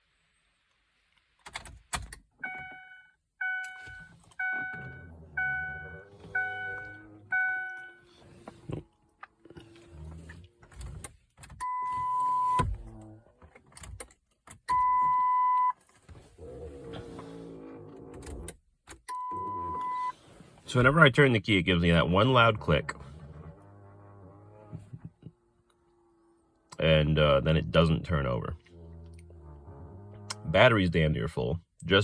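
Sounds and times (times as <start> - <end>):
car warning chime: 2.4 - 8.0, 11.6 - 12.7, 14.7 - 15.8, 19.1 - 20.2
long steady beep: 11.6 - 12.6, 14.7 - 15.8, 19.1 - 20.2.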